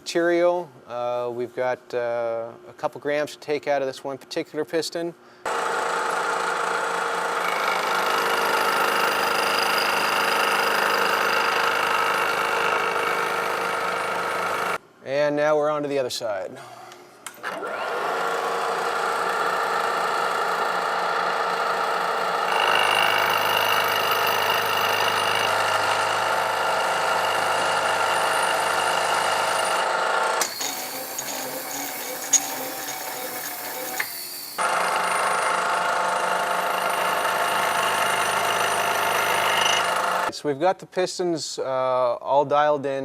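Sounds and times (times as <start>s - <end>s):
machine tool cutting metal: 5.5s - 14.8s, 17.4s - 40.3s.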